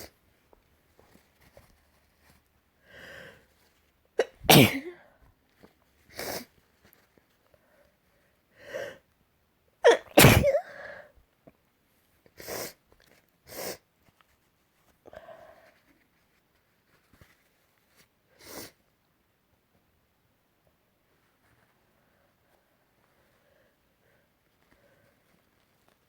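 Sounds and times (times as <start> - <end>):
person sneezing loudly: 4.2 - 5.0, 9.8 - 10.9.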